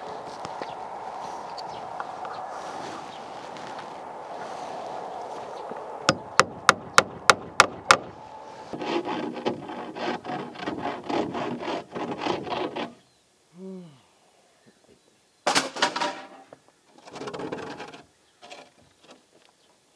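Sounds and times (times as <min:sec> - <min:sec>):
hammer driving a nail into wood: 0:06.1 - 0:08.1
handsaw cutting wood: 0:06.1 - 0:13.0.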